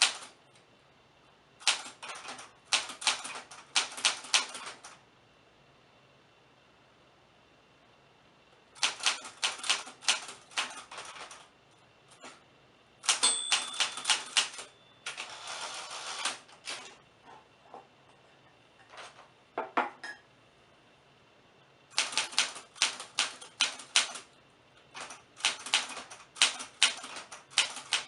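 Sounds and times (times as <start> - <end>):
typewriter keys clicking: 0.0 - 0.4, 1.6 - 4.9, 8.8 - 11.4, 13.0 - 15.3, 22.0 - 24.3, 24.9 - 28.0.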